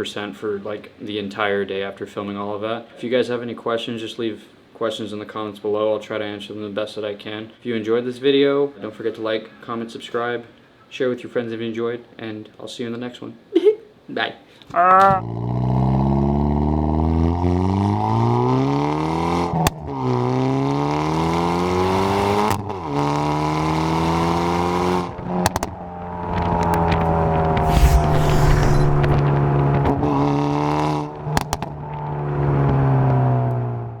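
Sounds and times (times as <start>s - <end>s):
car engine accelerating hard: 15.2s - 25.2s.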